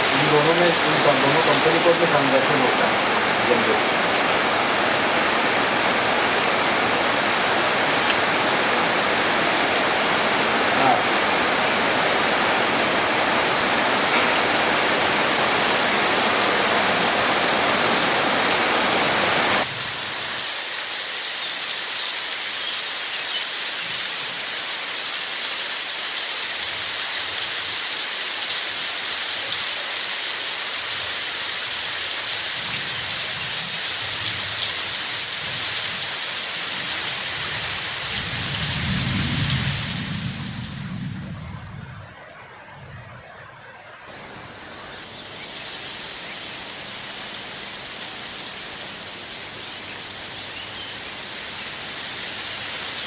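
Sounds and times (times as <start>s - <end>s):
steady rain: 0.0s - 53.0s.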